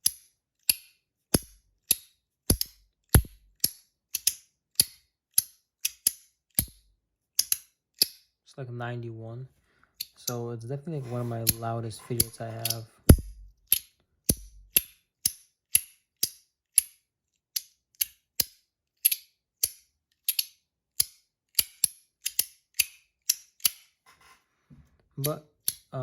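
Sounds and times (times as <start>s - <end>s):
metal coin halves snapping clicks: 0.0s - 6.7s.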